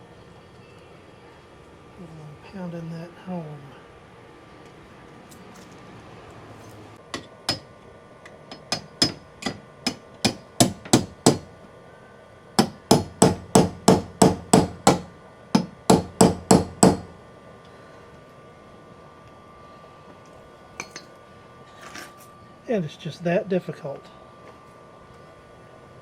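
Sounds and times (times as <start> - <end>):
hammer striking metal pin: 7.1 - 7.7, 8.5 - 11.5, 12.6 - 17.1.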